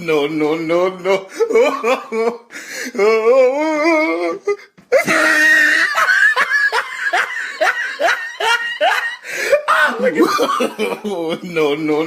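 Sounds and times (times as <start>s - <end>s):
hearty human laugh: 4.9s - 11.6s
drawn-out vocal cry: 7.6s - 10.3s.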